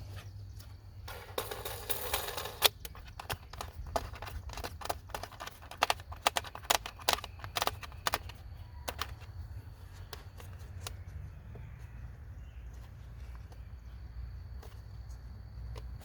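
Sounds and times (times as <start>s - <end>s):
small plastic and metal parts clicking: 1.1s - 11.0s.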